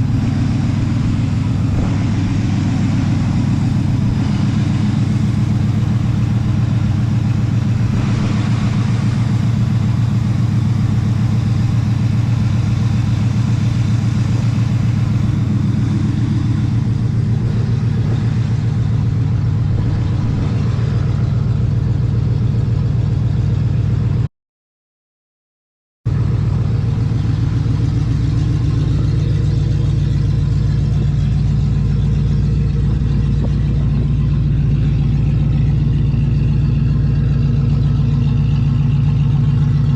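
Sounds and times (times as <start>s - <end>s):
car engine idling: 0.0s - 24.3s, 26.1s - 39.9s.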